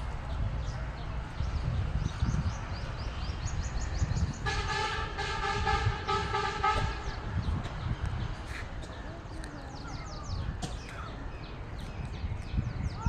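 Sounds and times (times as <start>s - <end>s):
small birds chirping: 0.2s - 4.4s, 6.9s - 13.0s
vehicle horn honking: 4.4s - 7.3s.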